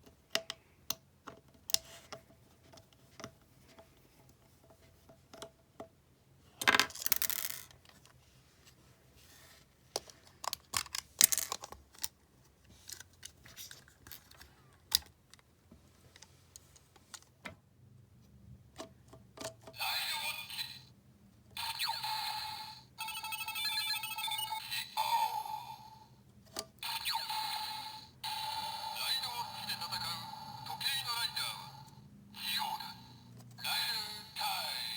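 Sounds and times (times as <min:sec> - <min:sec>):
toy electronic sound effects: 0:19.8 - 0:20.9, 0:21.6 - 0:26.2, 0:26.8 - 0:34.9.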